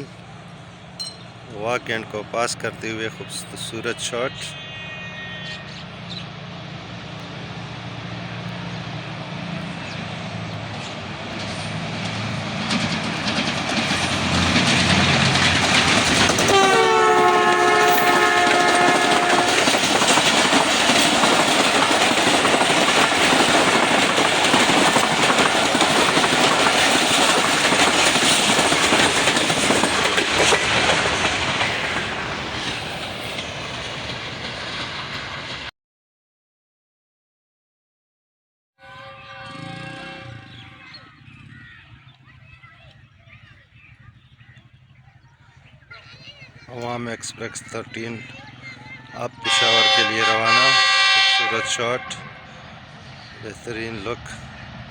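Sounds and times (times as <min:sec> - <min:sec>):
train coaches clattering on rails: 0:00.0 - 0:04.6, 0:05.7 - 0:35.7, 0:39.4 - 0:52.4
diesel locomotive engine drone: 0:00.0 - 0:35.7, 0:38.8 - 0:54.9
train horn blast: 0:04.4 - 0:05.9, 0:16.4 - 0:19.9, 0:38.8 - 0:40.8, 0:49.4 - 0:52.6.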